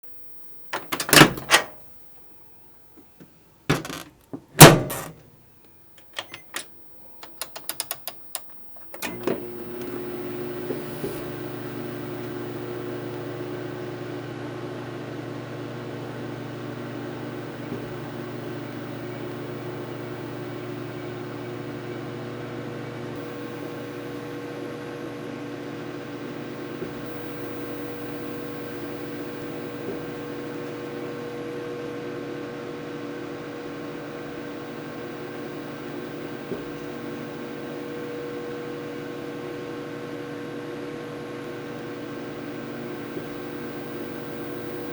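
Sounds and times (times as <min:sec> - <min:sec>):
microwave oven humming: 0:00.1 - 0:02.4, 0:04.6 - 0:05.2, 0:05.9 - 0:44.9
microwave buttons clacking: 0:00.8 - 0:01.8, 0:03.7 - 0:05.2, 0:06.0 - 0:09.9
small clicks: 0:04.9 - 0:10.0.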